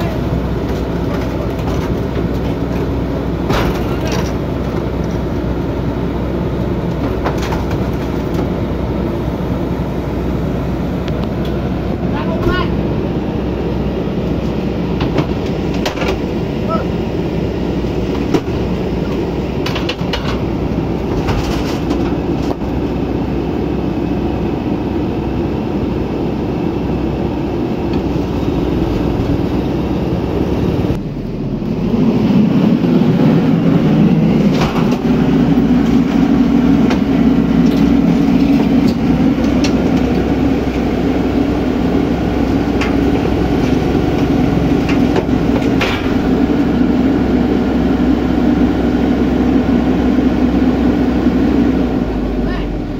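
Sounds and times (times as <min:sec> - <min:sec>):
heavy diesel machinery running: 0:00.0 - 0:52.9.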